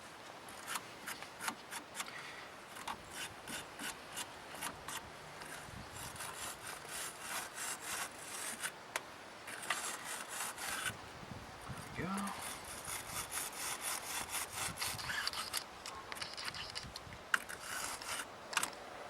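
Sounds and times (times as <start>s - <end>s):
wire brush scraping metal: 2.7s - 8.8s, 9.5s - 11.0s, 11.7s - 18.7s.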